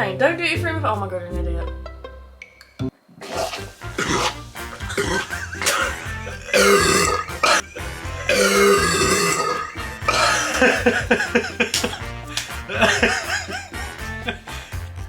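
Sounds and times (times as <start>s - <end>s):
background music: 0.0s - 15.0s
loud drawn-out burps: 3.2s - 11.5s.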